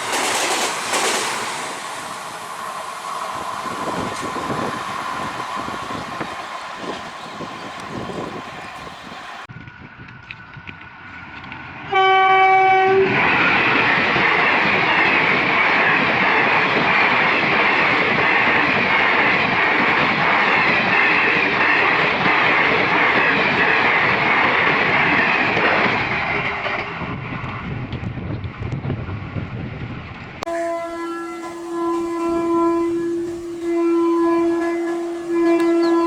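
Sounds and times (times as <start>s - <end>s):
train wheels rushing on track: 0.0s - 36.0s
train horn: 11.9s - 13.2s, 30.5s - 36.0s.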